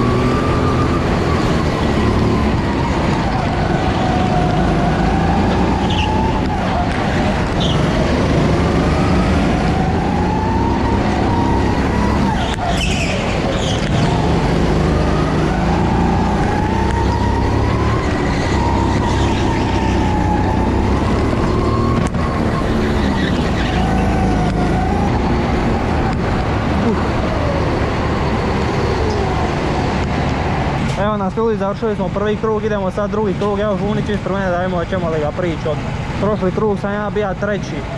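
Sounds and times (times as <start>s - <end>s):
go-kart engine revving: 0.0s - 29.7s.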